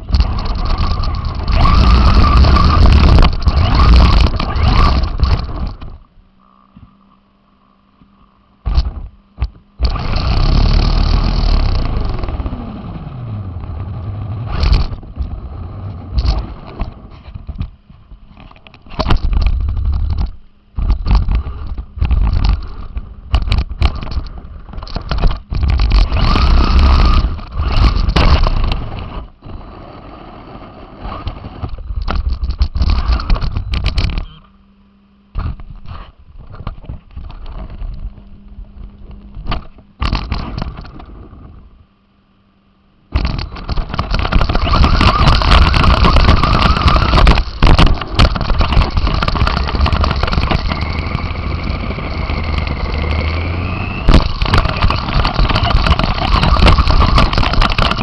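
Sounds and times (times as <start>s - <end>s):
toy car drivetrain noise: 0.0s - 6.0s, 9.8s - 13.3s, 21.1s - 29.2s, 43.2s - 58.0s
knocks and scrapes: 54.1s - 58.0s.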